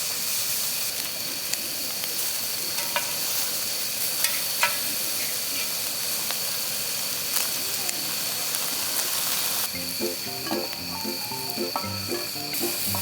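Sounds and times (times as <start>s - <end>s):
prawns sizzling on grill pan: 0.0s - 13.0s
utensils clicking against pan: 2.8s - 3.4s, 4.2s - 4.9s, 10.2s - 13.0s.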